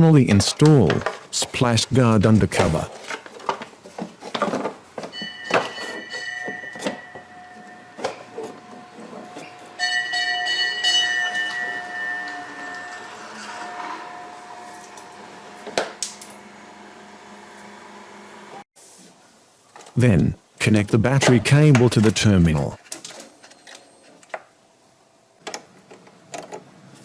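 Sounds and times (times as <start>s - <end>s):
metal tools clinking: 4.6s - 14.1s
struck metal ringing: 5.1s - 14.6s.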